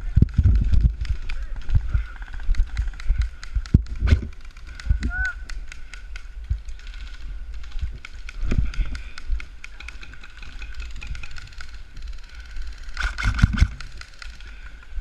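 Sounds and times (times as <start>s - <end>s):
airsoft guns firing: 1.1s - 14.6s.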